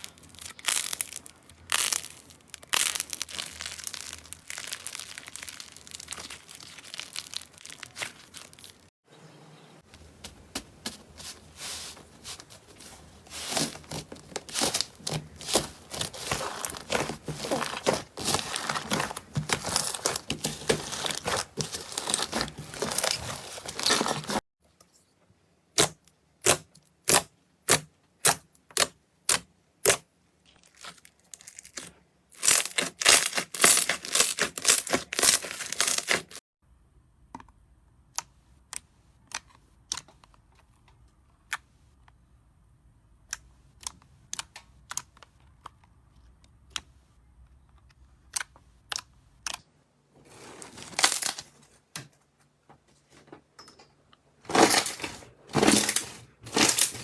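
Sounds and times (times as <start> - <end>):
slime crackling: 0.0 - 8.9, 13.4 - 24.4, 32.4 - 36.4.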